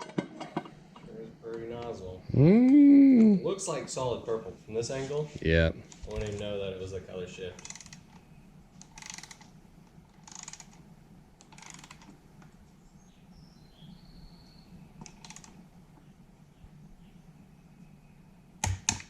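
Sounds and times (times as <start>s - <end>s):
steady low hum: 0.0s - 19.0s
small parts and tools rattling: 7.4s - 8.2s, 8.8s - 10.8s, 11.4s - 12.2s.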